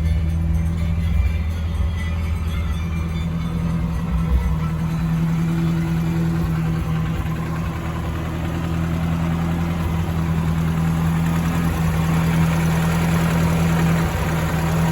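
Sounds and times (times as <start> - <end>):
pickup engine idling: 0.0 - 14.9.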